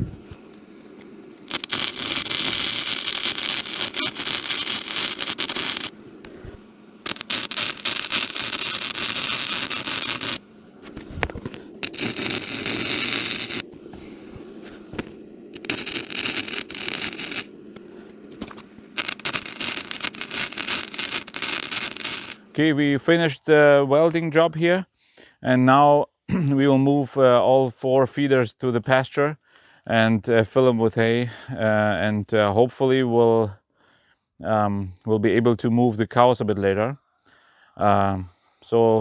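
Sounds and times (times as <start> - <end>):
arc welder crackling: 1.4 - 22.5.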